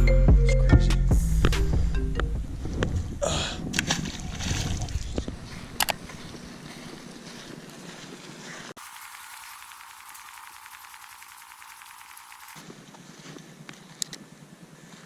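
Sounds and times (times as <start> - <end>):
wind rumbling on microphone: 2.3 - 6.6
sharp clicks: 8.8 - 12.6.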